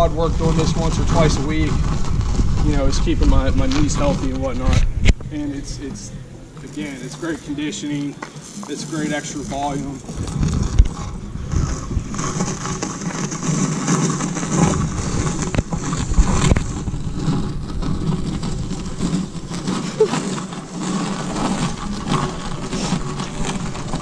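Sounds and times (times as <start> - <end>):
tire dragged scraping ground: 0.0 - 24.0.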